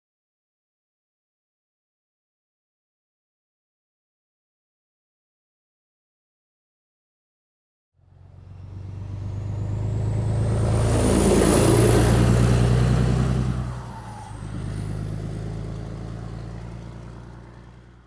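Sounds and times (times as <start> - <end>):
truck engine accelerating: 8.0 - 18.0.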